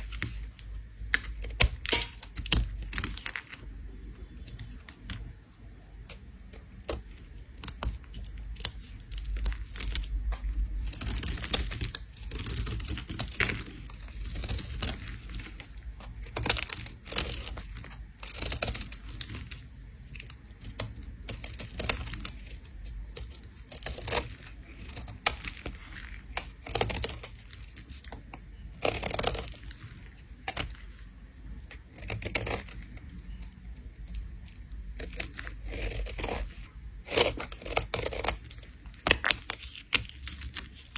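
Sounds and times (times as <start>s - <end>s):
blade scraping soap: 20.2s - 40.9s.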